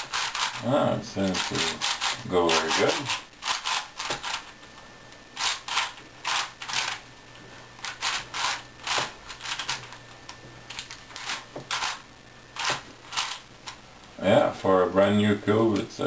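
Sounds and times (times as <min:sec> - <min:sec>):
puzzle cube clicking turns: 0:00.0 - 0:00.6, 0:01.3 - 0:04.5, 0:07.8 - 0:10.0, 0:10.7 - 0:12.0, 0:12.6 - 0:13.8.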